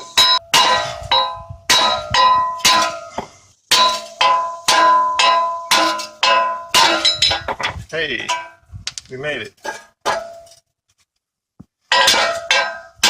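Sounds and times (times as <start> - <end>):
hammer striking steel stud: 0.1 - 7.5.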